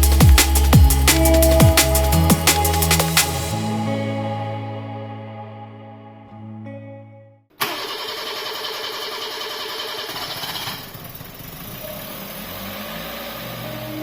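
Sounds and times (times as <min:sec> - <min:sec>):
background music: 0:00.0 - 0:06.9
car engine starting and idling: 0:07.6 - 0:14.0.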